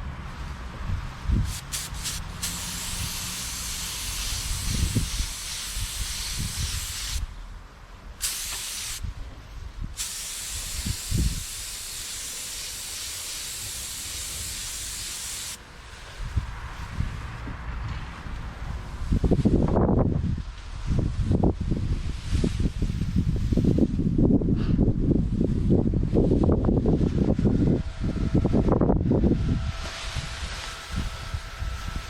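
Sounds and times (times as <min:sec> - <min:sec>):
wind buffeting microphone: 0:00.4 - 0:07.3, 0:08.2 - 0:11.8, 0:16.0 - 0:32.0
paint spray gun hissing: 0:01.5 - 0:07.3, 0:08.2 - 0:09.1, 0:10.0 - 0:15.6, 0:30.5 - 0:32.0.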